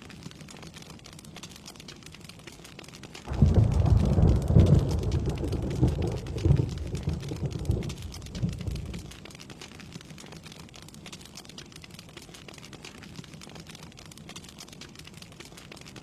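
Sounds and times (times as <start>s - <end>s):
steady rain: 0.0s - 16.0s
thunder rumbling: 3.3s - 9.2s.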